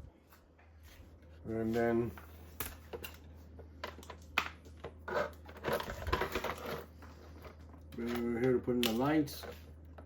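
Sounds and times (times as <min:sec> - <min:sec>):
plastic parts clicking and rustling: 0:02.6 - 0:09.6.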